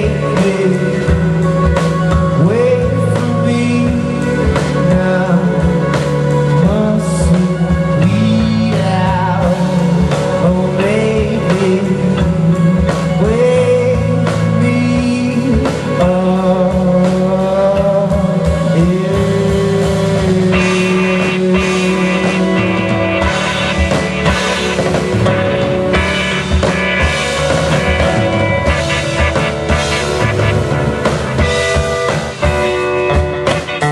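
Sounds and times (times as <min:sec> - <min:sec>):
bass guitar: 0:00.0 - 0:33.9
drum kit: 0:00.0 - 0:33.9
guitar: 0:00.0 - 0:33.9
person singing long notes: 0:00.0 - 0:33.9.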